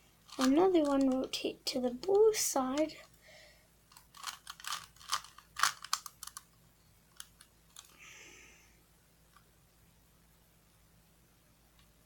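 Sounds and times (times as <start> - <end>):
soft hiss: 0.0 - 12.0
puzzle cube clicks: 0.3 - 1.4, 3.9 - 6.5.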